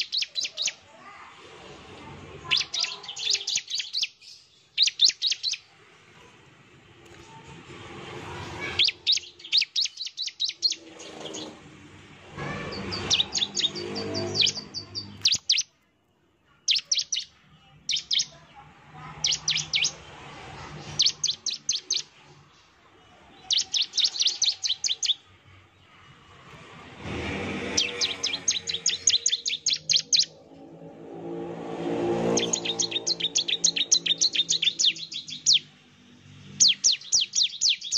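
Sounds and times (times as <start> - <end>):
bird calling sharp high notes: 2.4 - 5.6, 8.6 - 11.5, 12.4 - 15.7, 19.2 - 20.0, 23.4 - 25.3, 27.6 - 30.4, 31.8 - 35.7.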